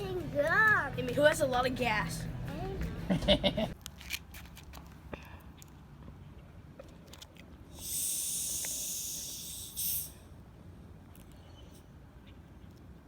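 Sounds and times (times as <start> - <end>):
carbonation gas hissing from bottle: 7.7 - 10.3.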